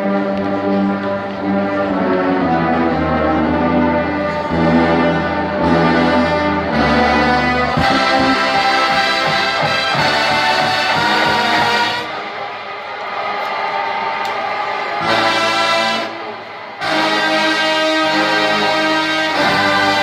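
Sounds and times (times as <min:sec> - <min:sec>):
brass fanfare: 0:00.0 - 0:12.4, 0:15.0 - 0:20.0
band with percussion: 0:05.8 - 0:12.1.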